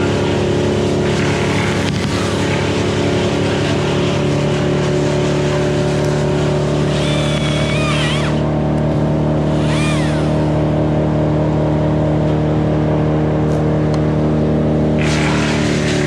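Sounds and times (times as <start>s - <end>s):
motor engine running steadily: 0.0s - 16.0s
high wavering squeaks: 6.9s - 8.5s, 9.5s - 10.6s.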